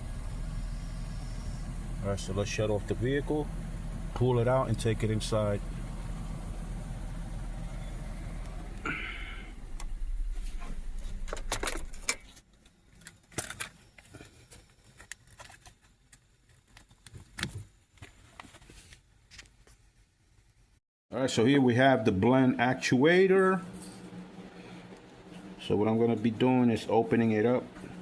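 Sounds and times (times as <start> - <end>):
car engine idling: 0.0 - 12.2
keys jingling: 11.0 - 12.4.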